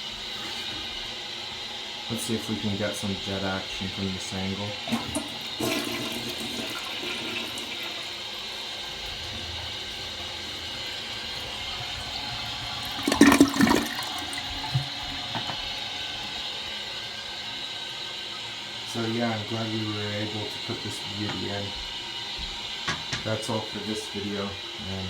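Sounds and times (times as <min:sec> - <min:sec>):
toilet flushing: 0:00.0 - 0:25.0
water gurgling: 0:04.7 - 0:17.6.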